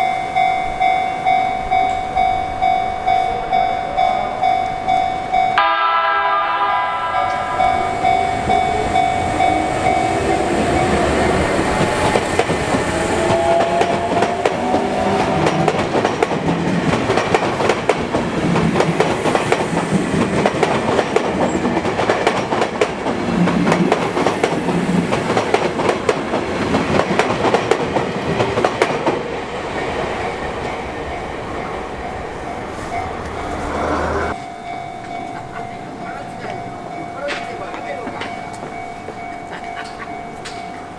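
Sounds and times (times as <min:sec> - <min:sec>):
train horn: 0:05.6 - 0:10.6, 0:12.9 - 0:15.8
train motor whine: 0:32.1 - 0:34.3.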